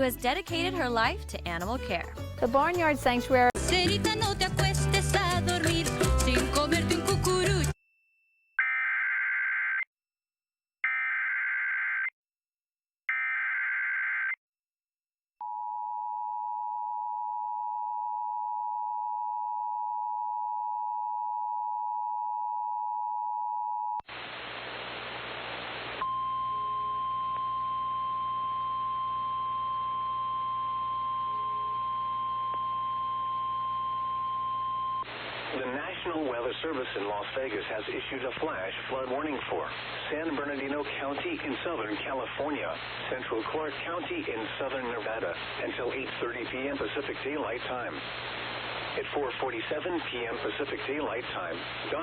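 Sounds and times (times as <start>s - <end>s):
radio static: 24.1s - 26.0s, 35.0s - 52.0s
two-tone attention signal: 26.0s - 35.0s.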